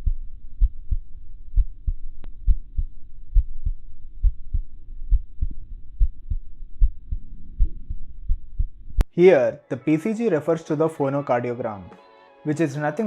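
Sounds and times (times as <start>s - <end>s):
heartbeat lub-dub: 0.0s - 9.0s.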